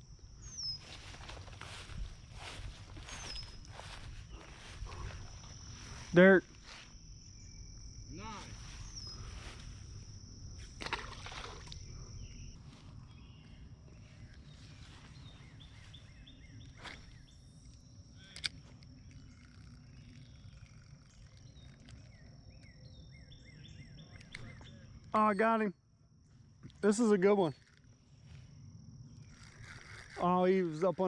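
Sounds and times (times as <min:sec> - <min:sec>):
high-pitched insect trill: 0:00.0 - 0:31.0
birds chirping: 0:00.2 - 0:10.2, 0:11.8 - 0:25.7.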